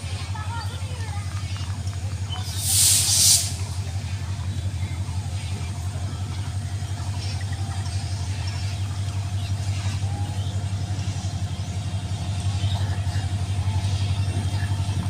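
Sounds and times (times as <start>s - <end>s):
diesel locomotive engine throbbing: 0.0s - 15.0s.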